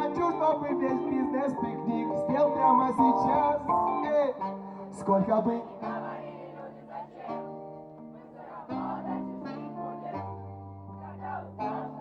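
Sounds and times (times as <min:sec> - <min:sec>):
faint voices: 0:00.0 - 0:07.5.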